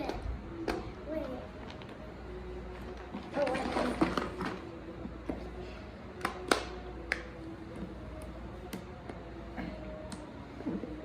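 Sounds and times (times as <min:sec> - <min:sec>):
packaging clicks and taps: 0:06.1 - 0:07.3.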